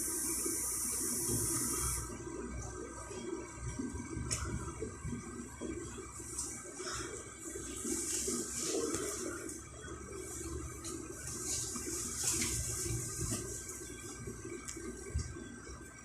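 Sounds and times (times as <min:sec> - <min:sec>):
high hiss: 0:00.0 - 0:02.2
train low hum and rumble: 0:00.0 - 0:16.0.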